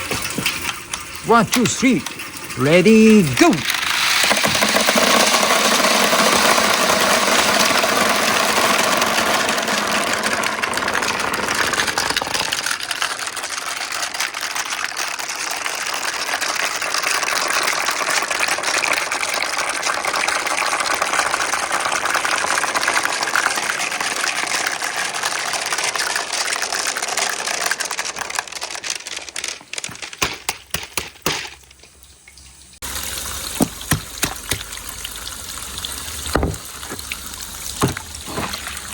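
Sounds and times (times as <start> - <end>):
clicks and drips: 0.0 - 4.8, 22.9 - 35.1, 36.1 - 38.9
water gushing through marble run: 0.0 - 38.9.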